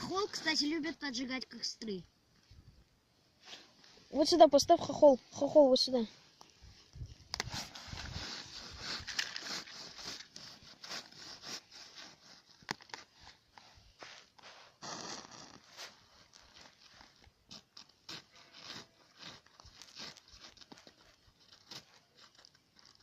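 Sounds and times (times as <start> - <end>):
twigs rustling and scraping: 5.2 - 14.6, 15.5 - 23.0.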